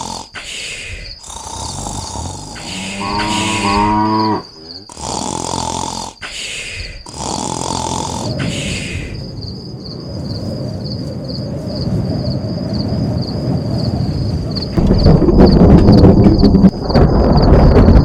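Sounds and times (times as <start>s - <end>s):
cow mooing: 1.6s - 4.8s
low even rumble: 13.9s - 18.0s.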